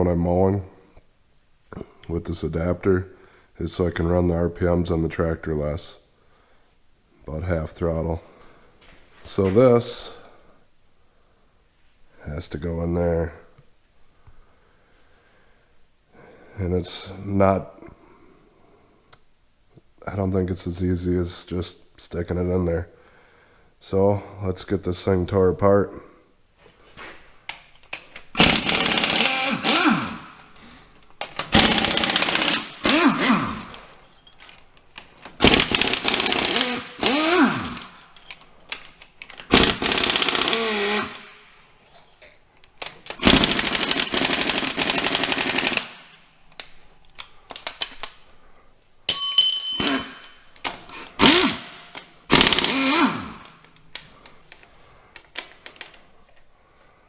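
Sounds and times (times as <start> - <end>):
impact wrench hammering bolts: 27.9 - 30.5, 31.2 - 34.6, 35.2 - 41.4, 42.8 - 46.2, 49.1 - 53.8
short metallic ring: 49.1 - 50.5.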